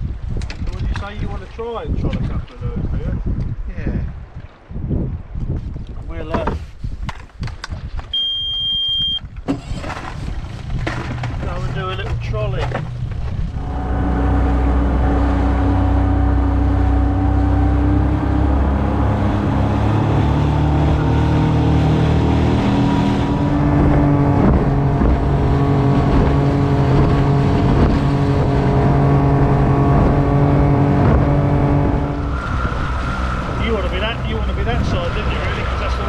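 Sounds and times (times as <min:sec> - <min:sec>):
outboard motor running: 0:09.5 - 0:36.0.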